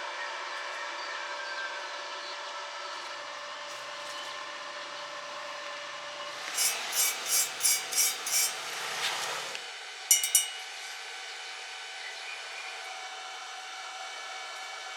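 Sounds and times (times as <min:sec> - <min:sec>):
tool scraping metal: 0:06.5 - 0:08.6, 0:10.1 - 0:10.8.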